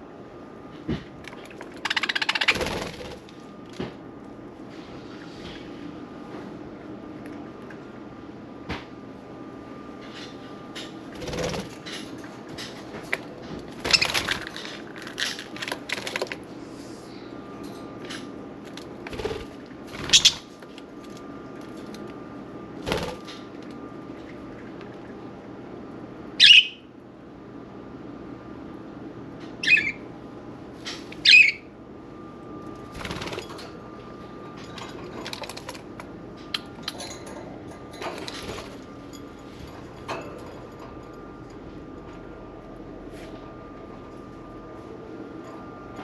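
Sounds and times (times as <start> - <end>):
steady low hum: 0.0 - 46.0
budgie wings flapping: 2.4 - 3.3.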